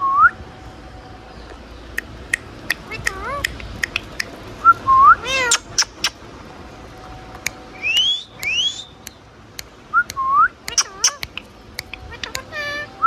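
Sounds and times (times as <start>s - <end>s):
parakeet whistled calls: 2.0s - 6.3s, 7.4s - 9.2s, 10.7s - 12.9s
sharp clicks: 5.5s - 6.2s, 7.5s - 12.4s.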